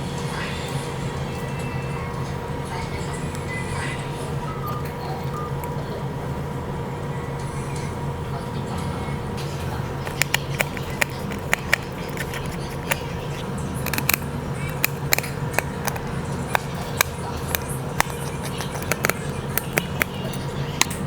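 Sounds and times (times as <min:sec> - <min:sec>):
small repair tools clicking: 0:10.0 - 0:21.0.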